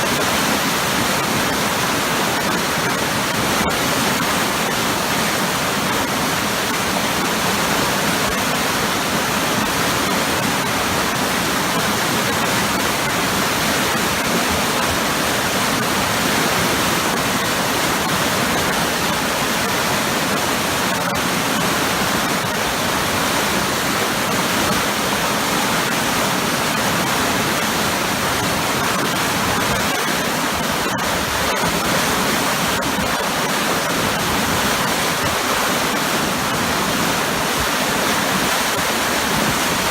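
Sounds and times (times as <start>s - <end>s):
waterfall pouring into a pool: 0.0s - 39.9s.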